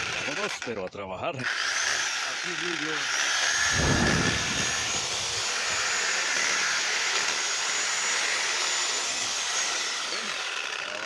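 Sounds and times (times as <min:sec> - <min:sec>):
power saw cutting branch: 0:01.5 - 0:11.0.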